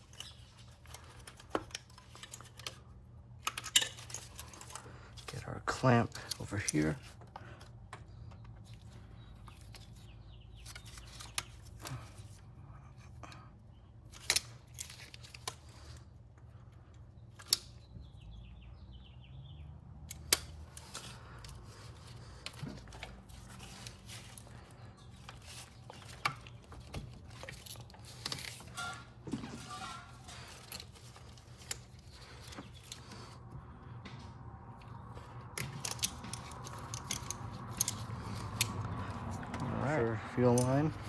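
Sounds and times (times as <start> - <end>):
steady low hum: 0.0 - 19.2
metal tools clinking: 3.4 - 7.0, 20.2 - 33.4, 34.8 - 41.0.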